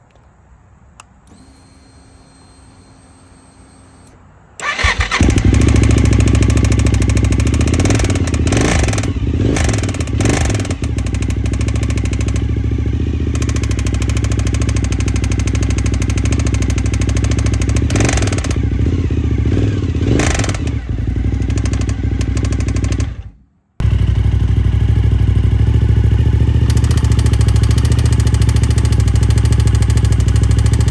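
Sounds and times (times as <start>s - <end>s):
motorcycle engine starting and idling: 1.0s - 30.9s
engine ticking noise: 4.0s - 30.9s.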